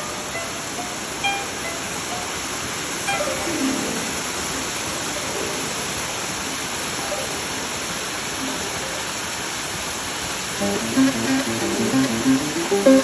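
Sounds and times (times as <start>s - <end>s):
faint musical notes: 0.0s - 5.9s, 10.6s - 13.0s.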